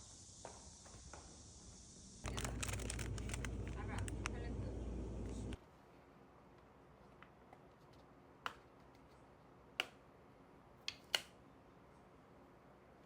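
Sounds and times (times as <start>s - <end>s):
small objects clicking and tapping: 2.2s - 4.4s.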